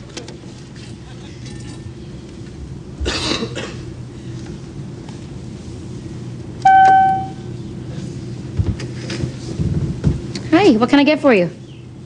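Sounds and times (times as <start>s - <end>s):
aircraft cabin drone: 2.0s - 9.6s
call chime ding: 6.7s - 7.5s.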